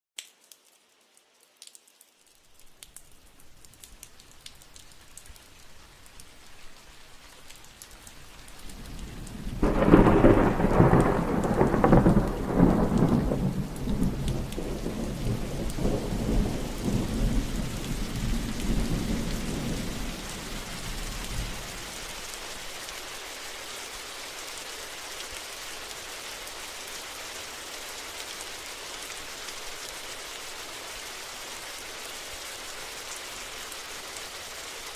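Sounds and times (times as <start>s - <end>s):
rain falling steadily: 0.2s - 34.9s
rolling thunder: 8.8s - 20.8s.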